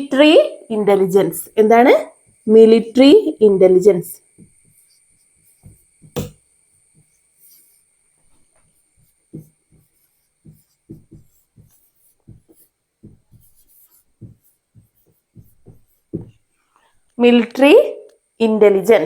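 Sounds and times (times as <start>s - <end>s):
handwriting strokes and taps: 4.2s - 17.0s.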